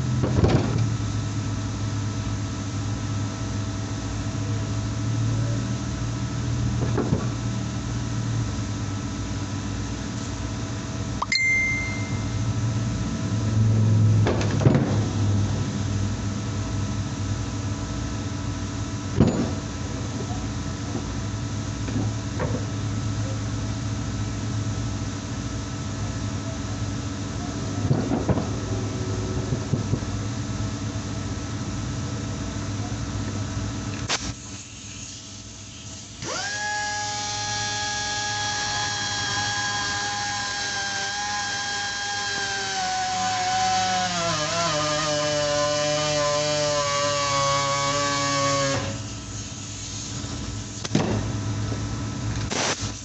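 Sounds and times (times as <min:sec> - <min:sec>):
workshop machine hum: 0:00.0 - 0:53.0
electric power tool running: 0:35.9 - 0:49.6.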